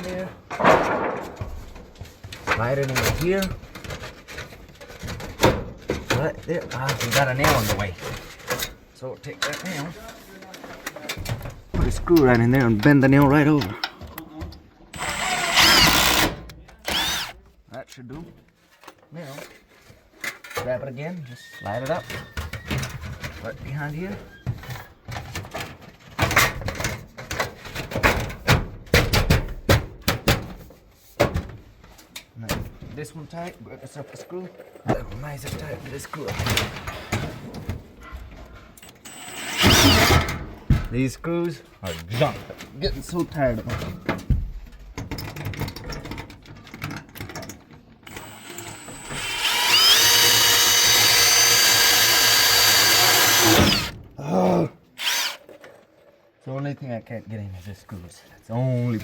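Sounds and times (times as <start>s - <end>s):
power drill whining: 14.9s - 17.4s, 38.8s - 40.6s, 48.1s - 54.0s, 55.0s - 55.5s
drill handling clicks: 15.0s - 17.4s, 38.8s - 40.4s, 48.1s - 54.0s, 55.0s - 55.5s.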